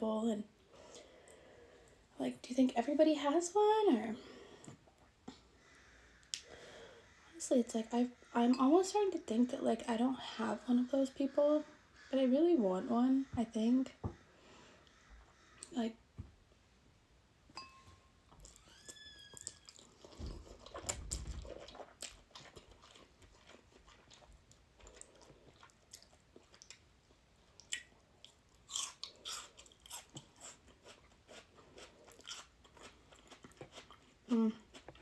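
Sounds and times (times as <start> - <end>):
wet chewing and smacking: 18.3 - 35.0.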